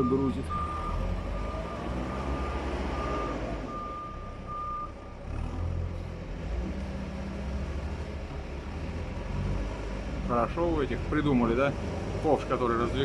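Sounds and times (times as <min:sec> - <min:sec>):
reversing alarm beeping: 0:00.0 - 0:05.0.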